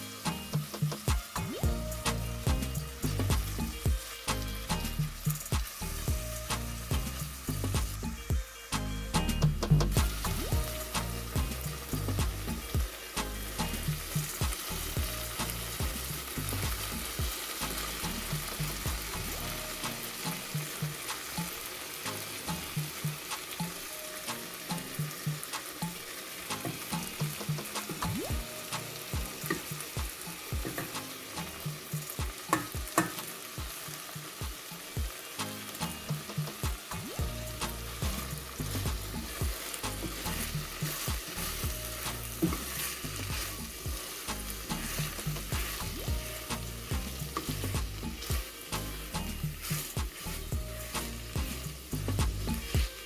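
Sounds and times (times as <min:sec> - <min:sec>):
food sizzling in oil: 0:00.0 - 0:53.0
utensil scraping a pot: 0:38.2 - 0:53.0.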